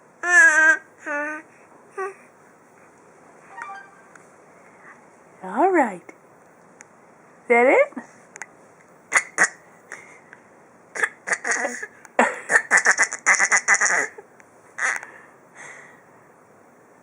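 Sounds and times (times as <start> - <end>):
baby raspy coughing: 9.1 - 9.6, 10.9 - 14.2.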